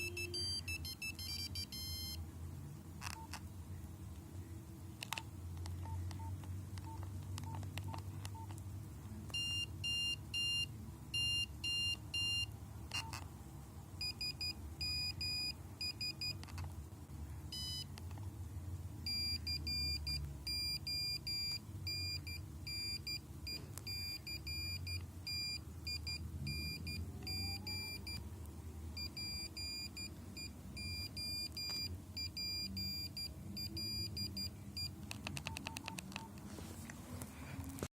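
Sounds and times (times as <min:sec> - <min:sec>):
keypad tones: 0:00.0 - 0:02.2, 0:03.0 - 0:03.5, 0:05.0 - 0:08.6, 0:09.3 - 0:13.3, 0:14.0 - 0:16.6, 0:17.5 - 0:18.2, 0:19.0 - 0:28.3, 0:29.0 - 0:36.5
mobile phone ringtone beeps: 0:00.0 - 0:02.2, 0:19.1 - 0:28.2, 0:29.0 - 0:36.3.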